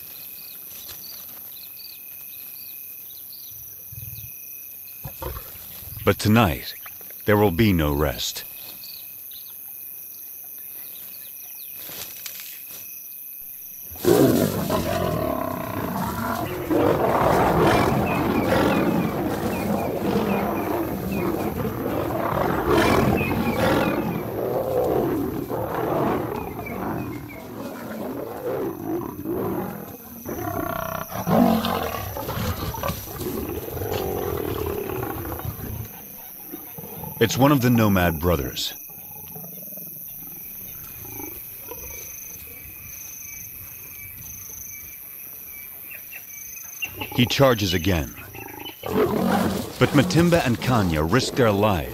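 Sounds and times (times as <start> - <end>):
crickets chirping: 0.0 - 51.9
lions snarling and growling: 5.0 - 6.7, 13.9 - 42.3, 46.8 - 51.9.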